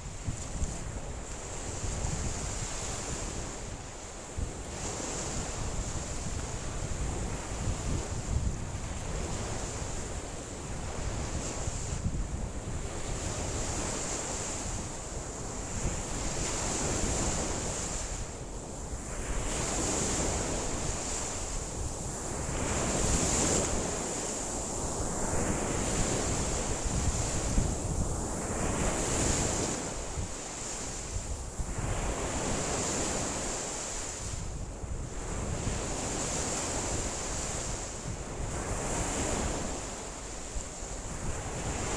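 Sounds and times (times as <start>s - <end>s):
lake waves washing in: 19.2s - 41.9s.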